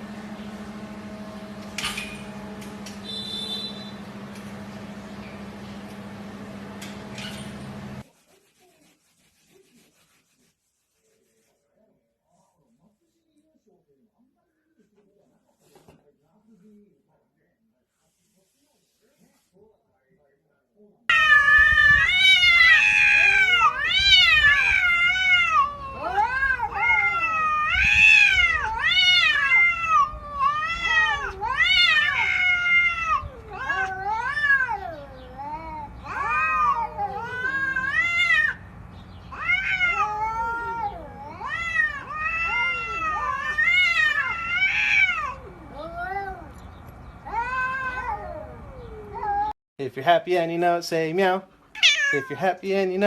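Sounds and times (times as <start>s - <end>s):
cat meowing: 21.1s - 38.6s, 39.3s - 46.6s, 47.2s - 49.5s, 51.7s - 52.4s.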